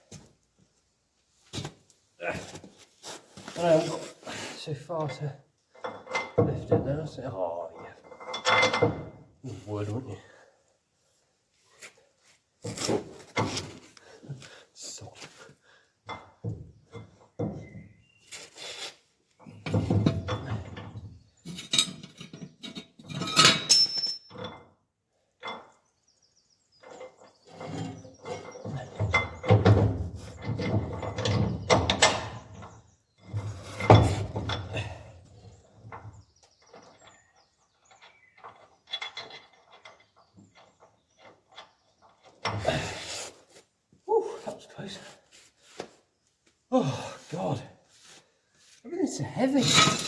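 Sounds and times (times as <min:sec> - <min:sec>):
heavy steel parts clanking and scraping: 0:08.1 - 0:09.2, 0:19.5 - 0:24.6, 0:26.8 - 0:36.1, 0:49.5 - 0:50.0.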